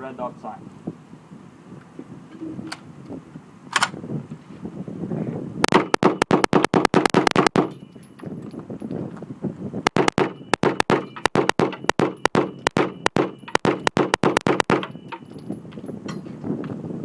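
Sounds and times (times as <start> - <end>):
rapid gunshots: 5.7 - 7.7, 9.9 - 14.9.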